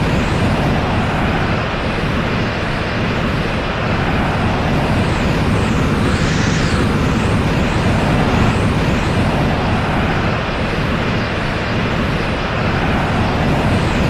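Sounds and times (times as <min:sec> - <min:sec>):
rumbling energy drone: 0:00.0 - 0:14.0
airy swishes: 0:05.5 - 0:08.8.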